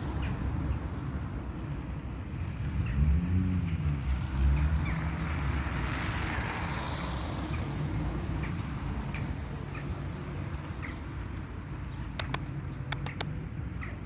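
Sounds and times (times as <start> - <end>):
engine passing by: 0.0 - 13.8.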